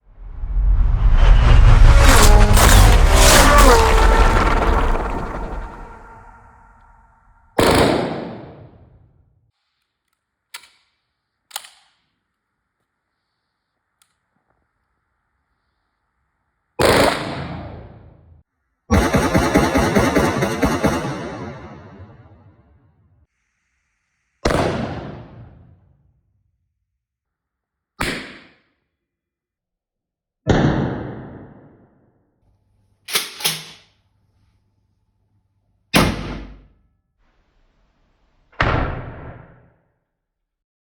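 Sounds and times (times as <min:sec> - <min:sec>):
gunshot indoors: 0:35.9 - 0:36.7, 0:38.6 - 0:39.8.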